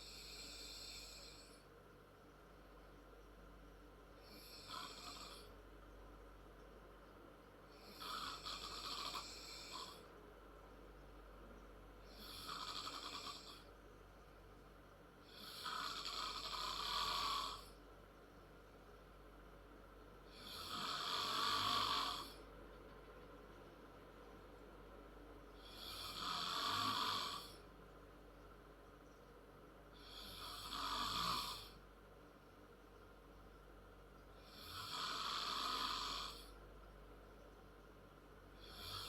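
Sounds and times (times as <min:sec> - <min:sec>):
girl snoring loudly: 0:07.8 - 0:10.0, 0:12.2 - 0:13.6, 0:15.3 - 0:17.6, 0:20.3 - 0:22.3, 0:25.6 - 0:27.5, 0:34.5 - 0:36.4.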